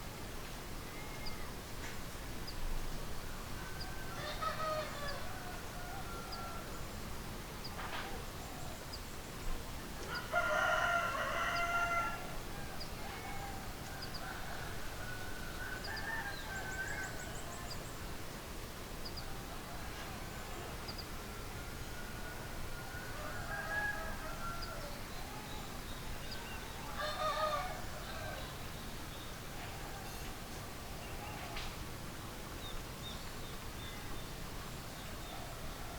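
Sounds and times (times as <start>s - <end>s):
rooster crowing: 10.1s - 12.3s, 22.0s - 24.9s, 27.0s - 28.4s.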